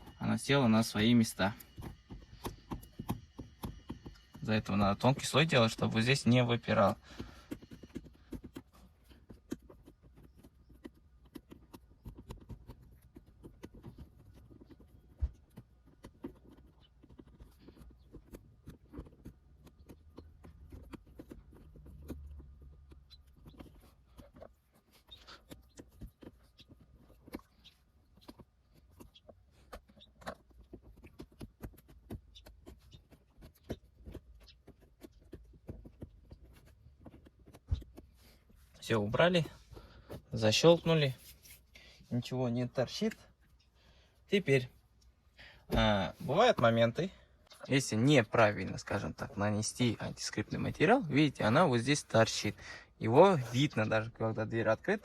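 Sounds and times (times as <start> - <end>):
hands clicking and tapping on trim panel: 0.8 - 41.2.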